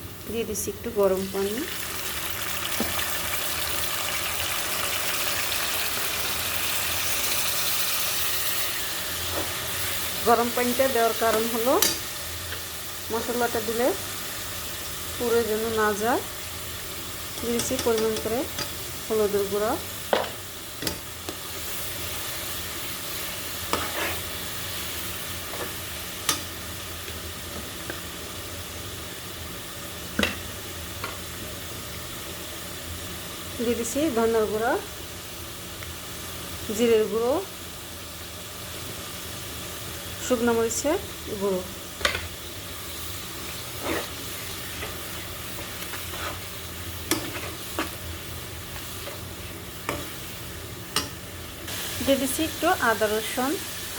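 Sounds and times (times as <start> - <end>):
onions sizzling in hot oil: 0.0 - 53.9
spatula scraping a pan: 23.2 - 24.5, 25.4 - 26.4, 43.4 - 50.4.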